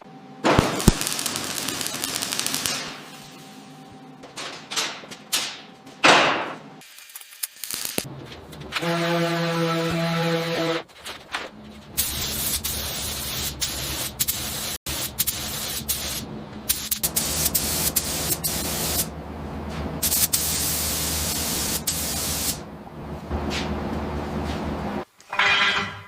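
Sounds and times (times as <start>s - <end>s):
low machine hum: 0.0s - 6.8s, 14.9s - 25.1s
hissing spray jet: 0.6s - 3.4s, 12.0s - 19.1s, 20.0s - 22.6s.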